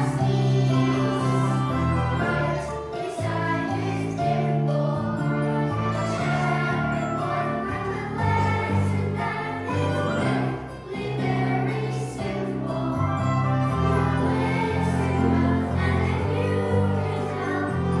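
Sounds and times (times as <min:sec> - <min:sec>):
choir singing: 0:00.0 - 0:18.0.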